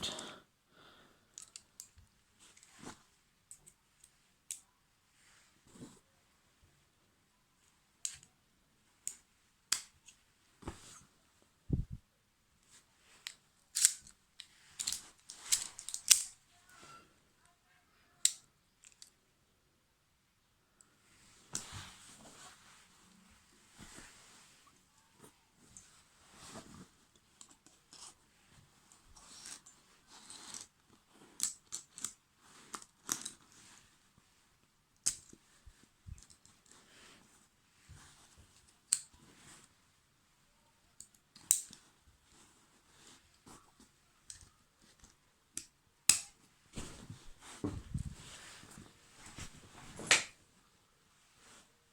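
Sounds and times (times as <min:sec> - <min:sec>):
soft rustling and scraping: 0:01.5 - 0:12.0, 0:12.6 - 0:17.2, 0:20.8 - 0:45.6, 0:46.4 - 0:51.9
sharp metal clicks and snaps: 0:13.2 - 0:14.2, 0:14.8 - 0:16.4, 0:41.0 - 0:41.8, 0:45.6 - 0:46.4.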